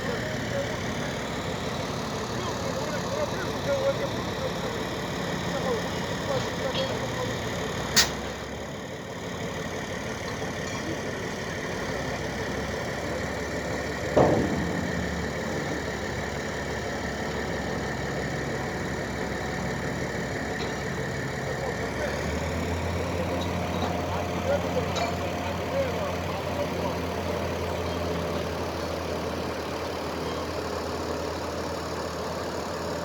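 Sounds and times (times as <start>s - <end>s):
engine idling: 0.0s - 33.0s.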